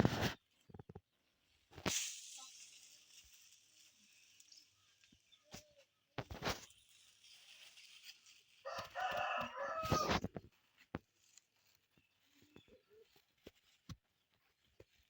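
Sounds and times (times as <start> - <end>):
rooster crowing: 8.6 - 10.2.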